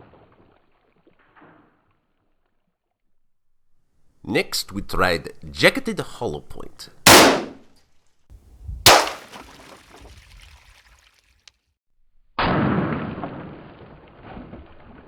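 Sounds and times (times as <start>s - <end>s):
loud dull blast: 7.1s - 7.6s, 8.9s - 9.3s
pistol shot: 7.1s - 7.6s, 8.9s - 9.4s.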